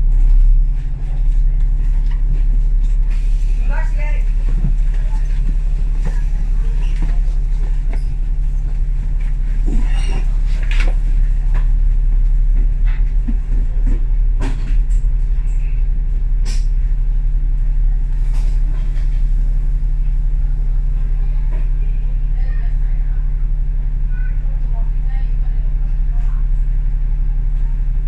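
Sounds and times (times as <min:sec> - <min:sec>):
bus engine and road drone: 0:00.0 - 0:28.0
rattles and clicks of bodywork: 0:00.2 - 0:17.0.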